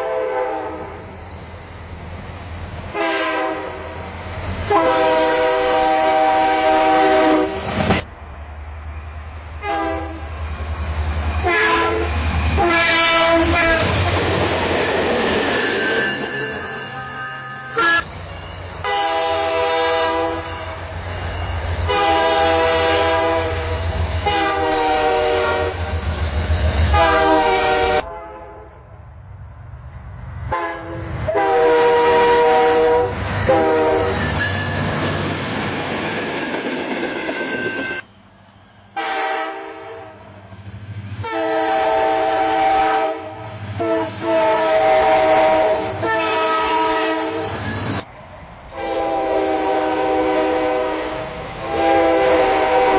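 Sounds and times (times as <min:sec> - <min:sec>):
locomotive air horn blasts: 0:00.0 - 0:01.0, 0:02.9 - 0:04.0, 0:04.7 - 0:07.8, 0:09.6 - 0:10.3, 0:11.4 - 0:14.1, 0:16.6 - 0:18.1, 0:18.8 - 0:20.8, 0:21.9 - 0:25.8, 0:26.9 - 0:28.8, 0:30.5 - 0:34.2, 0:39.0 - 0:40.3, 0:41.2 - 0:47.5, 0:48.7 - 0:52.9
train rumble: 0:00.0 - 0:52.9.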